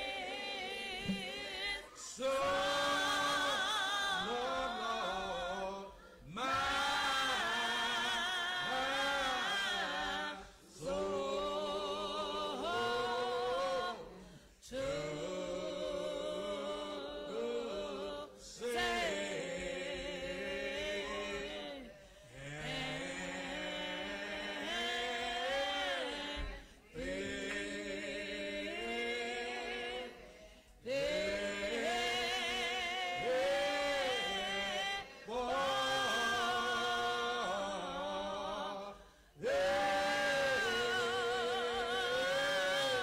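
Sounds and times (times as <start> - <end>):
congregation singing a hymn: 0.0 - 43.0
singers breathing: 39.0 - 39.4.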